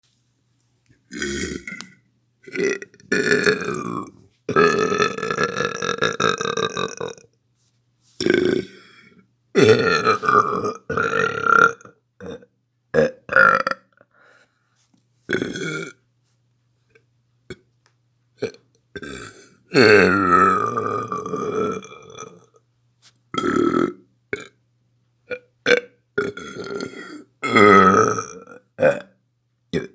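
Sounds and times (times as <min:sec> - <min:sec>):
person burping: 0:01.1 - 0:07.3, 0:08.2 - 0:09.0, 0:09.6 - 0:14.0, 0:15.3 - 0:16.0, 0:18.4 - 0:22.5, 0:23.4 - 0:24.6, 0:25.3 - 0:29.2.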